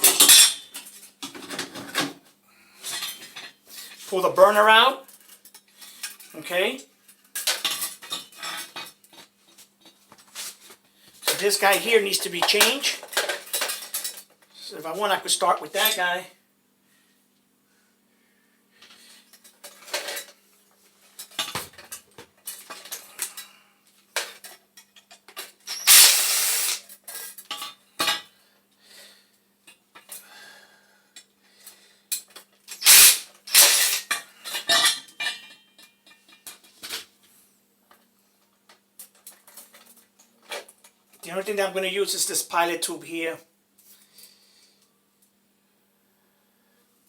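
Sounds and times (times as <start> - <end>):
metal parts and tools clanking: 0.0 - 2.1, 2.8 - 4.0, 7.3 - 10.0, 11.2 - 14.3, 19.4 - 20.4, 24.2 - 28.3, 32.1 - 37.1.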